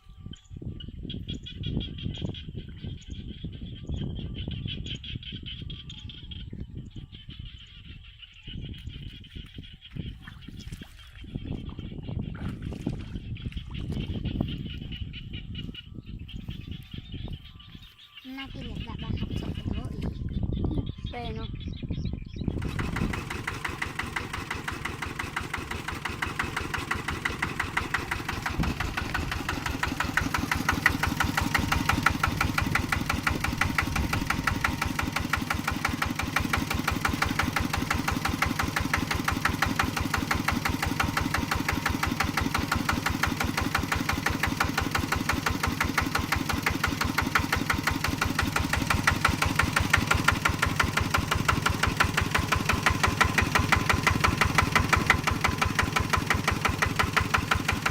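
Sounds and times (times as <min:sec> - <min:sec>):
small engine idling: 0:22.3 - 0:57.9.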